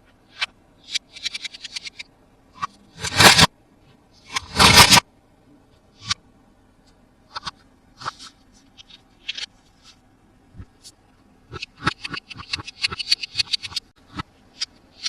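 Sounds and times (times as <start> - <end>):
toys scraping: 2.6 - 3.5.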